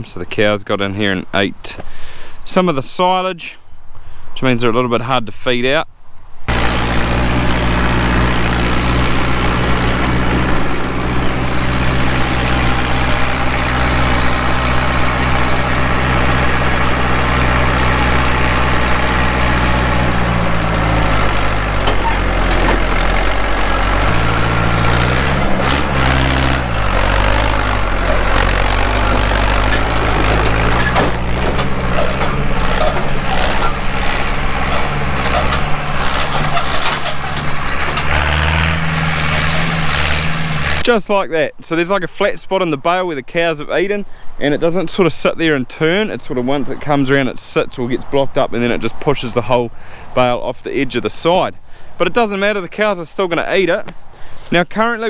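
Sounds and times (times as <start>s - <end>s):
tractor engine running: 6.5s - 41.0s.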